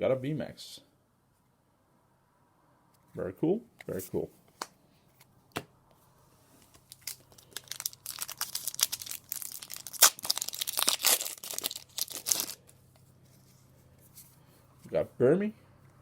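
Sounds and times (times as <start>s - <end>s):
foil wrapper tearing and crinkling: 6.6s - 12.7s.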